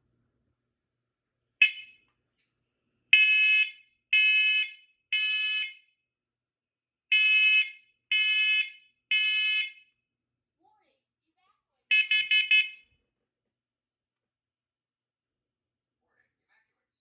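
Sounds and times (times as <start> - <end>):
smoke alarm beeps: 1.6 - 2.1, 3.2 - 6.0, 7.1 - 10.0, 11.9 - 13.0
smoke alarm chirp: 1.6 - 2.1, 3.2 - 6.0, 7.1 - 10.0, 11.9 - 13.0.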